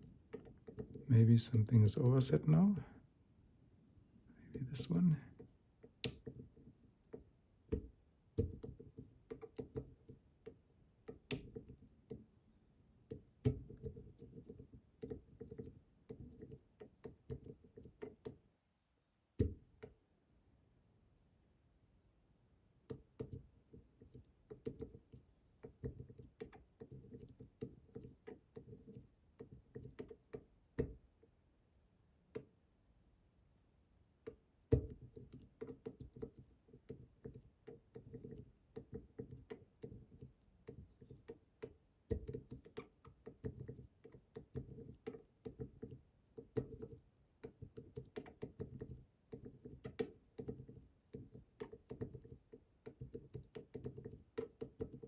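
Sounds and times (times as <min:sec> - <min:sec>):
lock pick clicking and tapping: 0:00.0 - 0:01.0, 0:05.4 - 0:12.3, 0:13.0 - 0:18.4, 0:19.4 - 0:20.0, 0:22.8 - 0:31.0, 0:32.3 - 0:32.5, 0:34.2 - 0:55.0.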